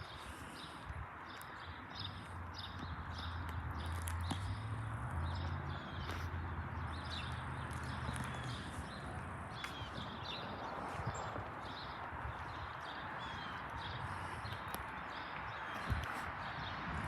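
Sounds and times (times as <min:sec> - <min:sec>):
birds chirping: 0:00.0 - 0:17.0
low engine hum: 0:02.0 - 0:14.6.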